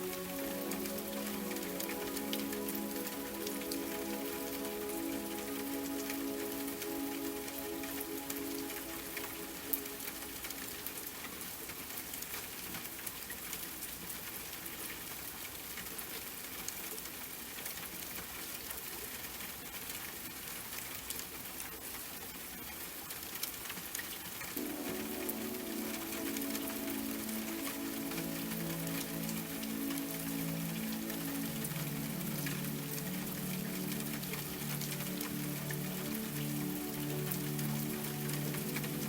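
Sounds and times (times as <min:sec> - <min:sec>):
soft sustained music chord: 0:00.0 - 0:11.3, 0:24.6 - 0:39.0
steady rain falling: 0:00.0 - 0:39.0.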